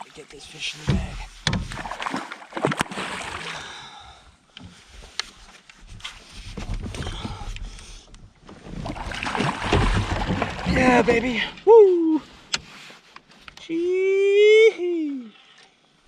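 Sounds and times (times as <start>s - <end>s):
knocks on small boat: 0.8s - 1.9s.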